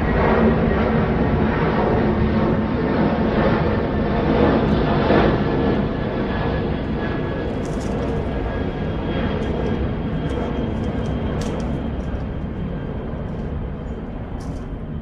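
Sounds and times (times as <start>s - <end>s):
airplane engines roaring: 0.0s - 15.0s.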